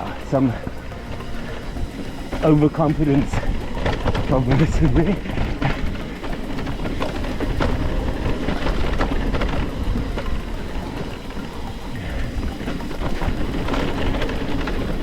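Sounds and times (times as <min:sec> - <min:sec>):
bike clicks and rattles: 0:00.0 - 0:15.0
tyres rumbling over dirt: 0:00.0 - 0:15.0
wind buffeting microphone: 0:00.0 - 0:15.0.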